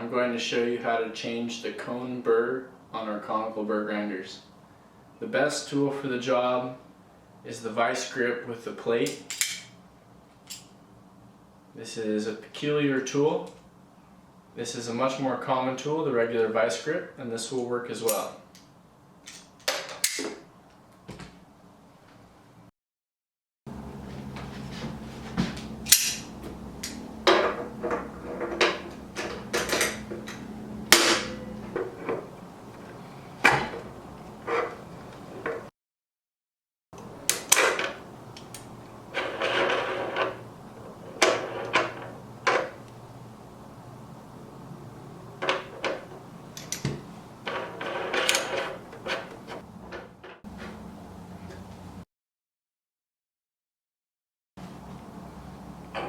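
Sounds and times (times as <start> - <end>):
small parts clicking and scraping: 18.1 - 20.2
low steady hum: 23.7 - 35.6.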